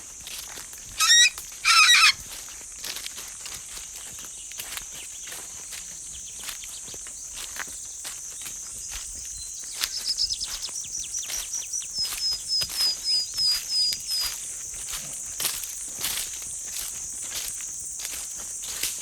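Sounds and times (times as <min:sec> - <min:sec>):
insects droning: 0:00.0 - 0:19.0
short high chirps: 0:01.0 - 0:02.2.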